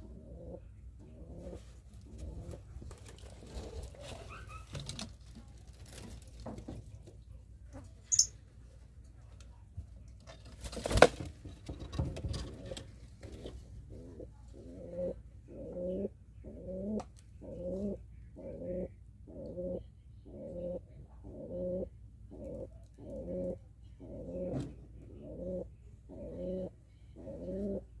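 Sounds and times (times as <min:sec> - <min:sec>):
pigeon cooing: 0:00.0 - 0:05.0, 0:12.4 - 0:28.0.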